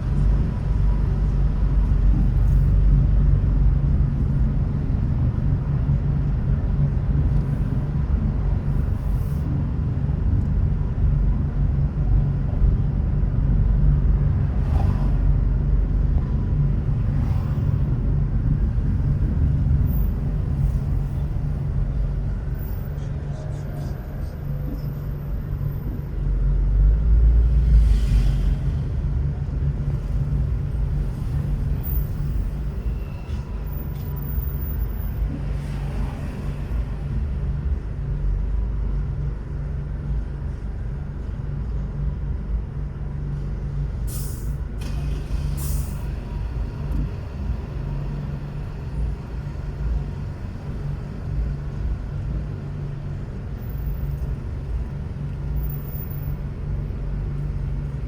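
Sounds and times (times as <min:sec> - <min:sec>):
car road and engine rumble: 0:00.0 - 0:58.0.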